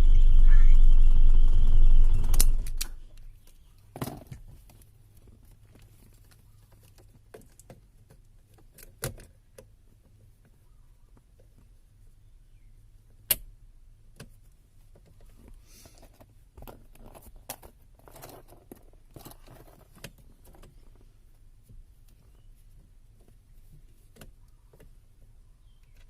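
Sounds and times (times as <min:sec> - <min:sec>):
low steady hum: 0:00.0 - 0:03.8
rustles: 0:00.0 - 0:13.3, 0:14.1 - 0:26.0
small hard parts clicking and rattling: 0:14.9 - 0:21.1.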